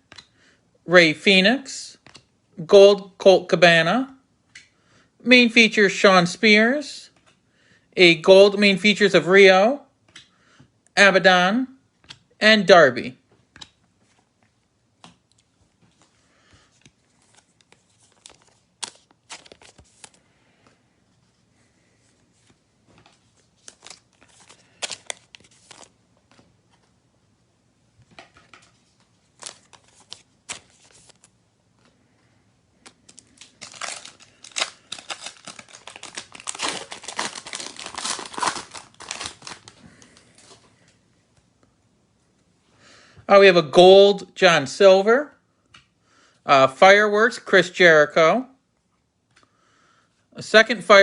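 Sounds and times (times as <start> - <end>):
trading cards shuffling: 13.5 - 27.0, 28.0 - 32.0, 32.8 - 40.8
foil pack tearing and crinkling: 33.1 - 39.8.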